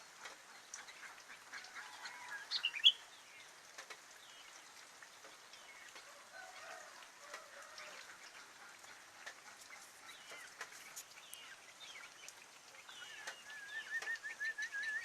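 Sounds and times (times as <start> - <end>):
bird chirping: 2.4 - 3.5, 9.6 - 15.0.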